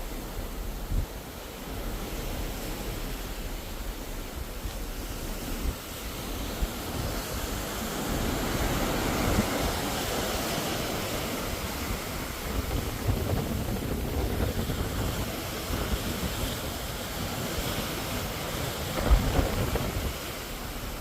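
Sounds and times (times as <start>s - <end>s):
ocean water rushing: 0.0s - 21.0s
wind rumbling on microphone: 0.0s - 21.0s.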